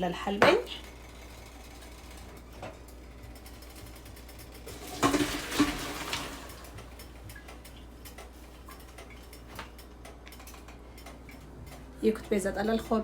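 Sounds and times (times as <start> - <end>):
faint ticks and clicks: 6.6 - 13.0.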